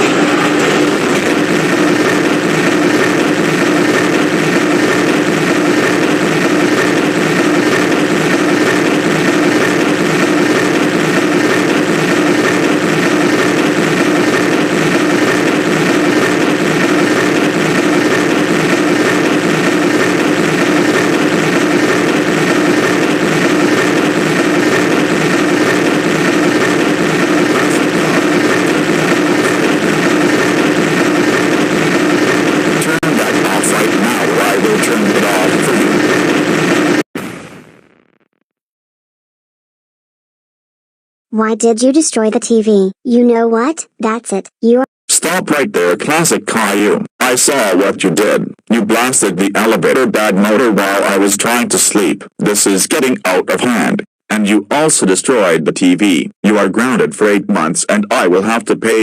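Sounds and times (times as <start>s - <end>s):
elevator motor droning hum: 0.0s - 38.1s.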